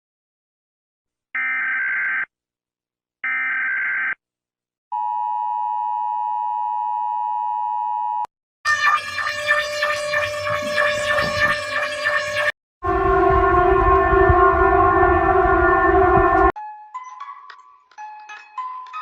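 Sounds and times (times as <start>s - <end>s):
screeching digital data bursts: 8.7s - 12.5s
loud pulsing alarm: 8.7s - 16.6s.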